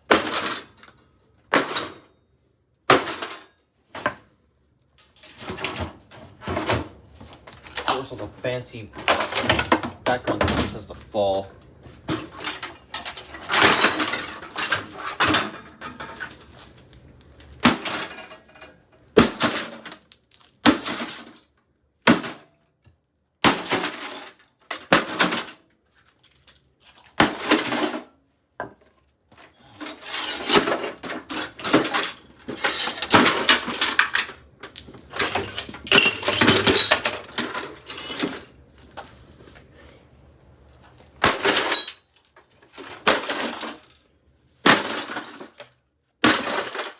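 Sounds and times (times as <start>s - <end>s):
sledgehammer smashing microwave: 0.0s - 0.8s, 1.5s - 2.1s, 2.9s - 4.2s, 9.0s - 11.3s, 12.1s - 16.4s, 17.6s - 18.4s, 19.2s - 20.0s, 20.6s - 21.4s, 22.0s - 22.5s, 23.4s - 25.6s, 27.2s - 28.1s, 29.8s - 34.4s, 35.1s - 38.5s, 41.2s - 42.0s, 42.7s - 43.9s, 44.6s - 45.6s, 46.2s - 46.9s
parts breaking and clattering: 0.0s - 2.1s, 2.9s - 4.2s, 5.0s - 11.4s, 12.0s - 22.5s, 23.4s - 25.7s, 26.4s - 28.2s, 29.6s - 38.6s, 41.2s - 44.0s, 44.6s - 46.9s.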